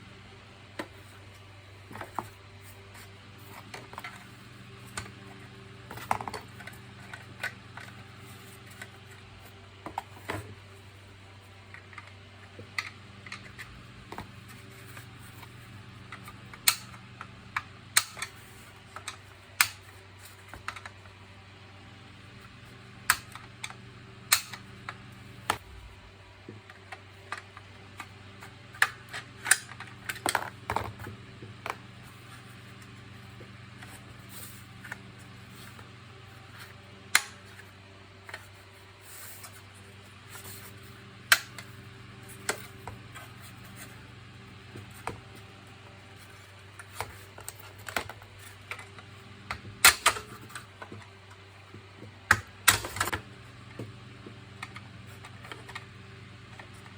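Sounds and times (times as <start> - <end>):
faint steady hum: 0.0 - 56.9
plastic parts clicking: 18.0 - 18.4, 23.1 - 24.7.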